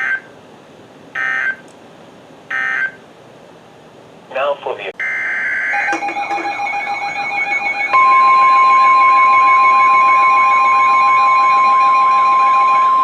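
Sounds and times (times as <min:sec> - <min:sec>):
steady warning tone: 0:01.2 - 0:01.6, 0:02.5 - 0:03.0, 0:05.0 - 0:13.0
warbling alarm: 0:01.2 - 0:01.6, 0:02.5 - 0:03.0, 0:05.0 - 0:13.0
rapid beeping: 0:05.8 - 0:13.0.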